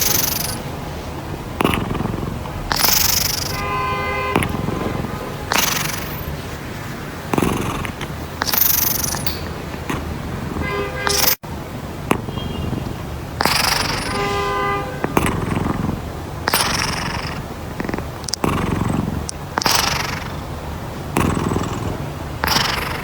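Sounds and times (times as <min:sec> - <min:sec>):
cat snoring: 0:00.0 - 0:00.7, 0:01.3 - 0:03.7, 0:04.3 - 0:06.3, 0:07.2 - 0:09.2, 0:13.4 - 0:14.2, 0:15.0 - 0:23.0.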